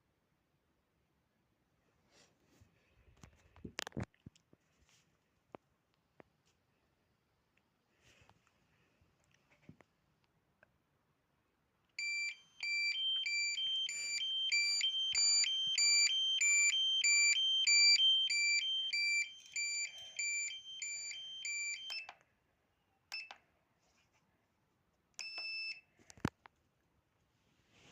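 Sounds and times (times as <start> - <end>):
short beeps: 12.0 - 22.2
two-tone fire alarm: 12.0 - 22.2.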